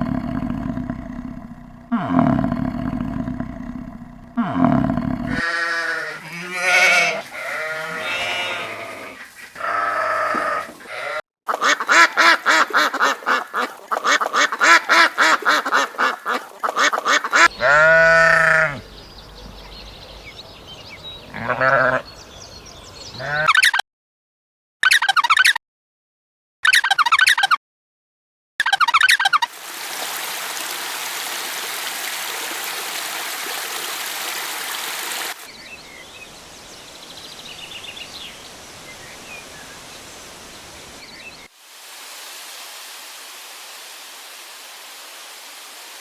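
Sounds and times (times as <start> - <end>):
deep low animal call: 0.0 - 11.2, 17.5 - 20.4
goats bleating: 4.4 - 11.2, 17.6 - 18.8.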